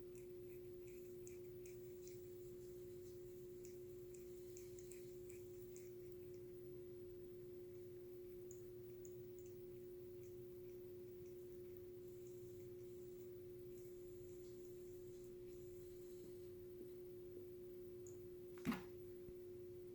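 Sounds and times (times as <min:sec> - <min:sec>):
faint steady tone: 0:00.0 - 0:19.9
faint ticks: 0:08.4 - 0:10.4.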